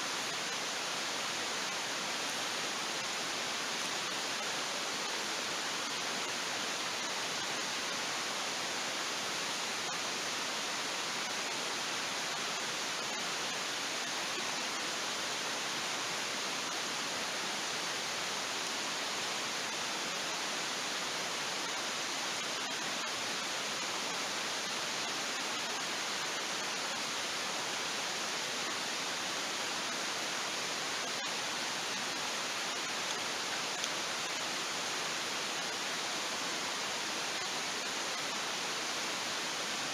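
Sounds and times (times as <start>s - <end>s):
faint clicks: 33.1s - 34.0s.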